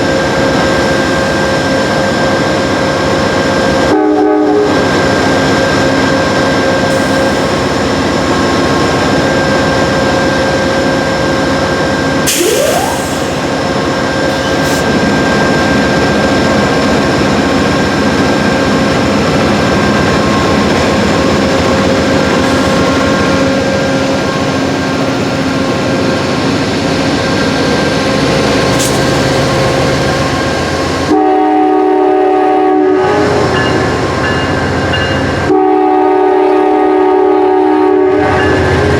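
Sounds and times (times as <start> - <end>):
diesel locomotive running: 0.0 - 38.9
train horn chord: 3.9 - 4.8, 31.0 - 33.8, 35.4 - 38.9.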